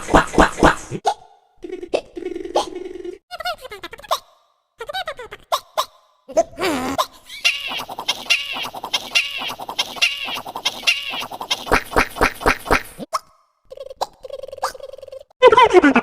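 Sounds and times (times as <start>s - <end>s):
repeated high-pitched cartoon sample: 7.4s - 11.3s.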